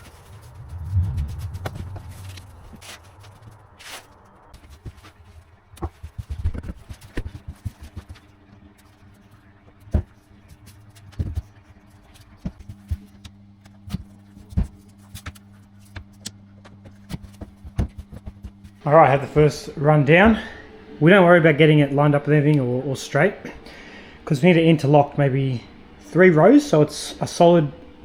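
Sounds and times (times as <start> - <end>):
low steady hum: 0.0 - 4.6, 18.8 - 28.0.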